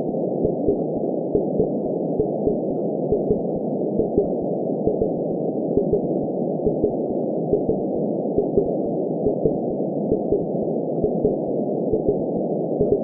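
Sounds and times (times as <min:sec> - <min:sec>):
heartbeat thumps: 0:00.4 - 0:03.4, 0:04.9 - 0:05.1, 0:05.8 - 0:06.1, 0:06.7 - 0:07.8, 0:08.4 - 0:08.7, 0:09.3 - 0:10.4, 0:11.0 - 0:12.2.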